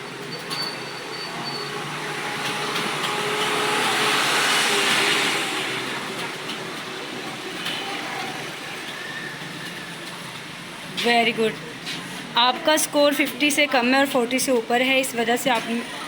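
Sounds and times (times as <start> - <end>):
passing vehicle rushing: 1.7 - 10.9.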